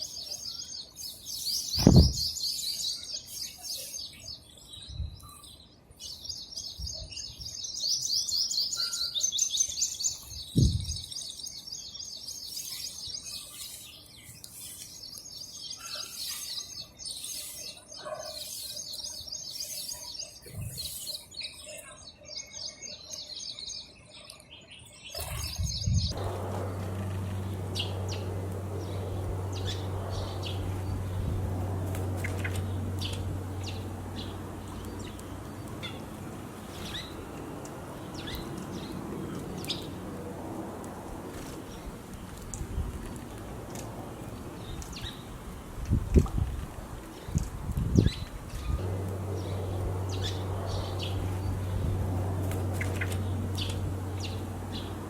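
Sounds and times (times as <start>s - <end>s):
sparrows chirping: 0.0s - 55.0s
low thumps: 1.8s - 2.2s
steady low hum with hiss: 26.1s - 55.0s.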